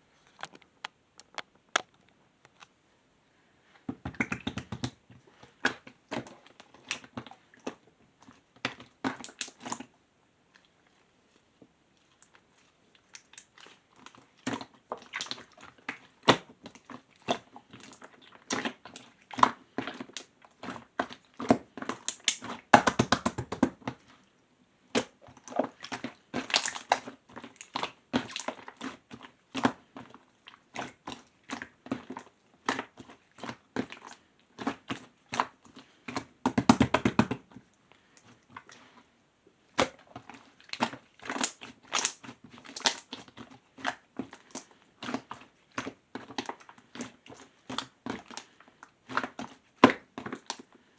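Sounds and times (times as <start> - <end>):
slime squeezed with sticky pops: 4.1 - 5.0, 21.9 - 23.8, 40.7 - 43.2
rapid slime crackling: 21.8 - 23.8, 36.5 - 37.6.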